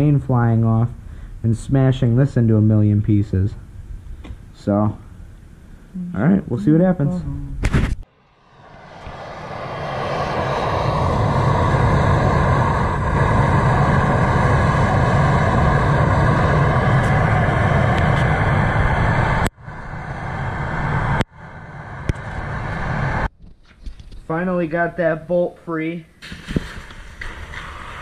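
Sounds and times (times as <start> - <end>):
gas torch hissing: 8.7 - 19.5.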